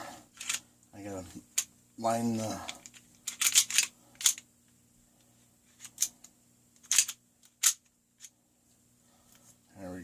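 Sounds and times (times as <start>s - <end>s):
metal clicks of pistol parts: 2.8s - 4.4s, 6.8s - 8.3s.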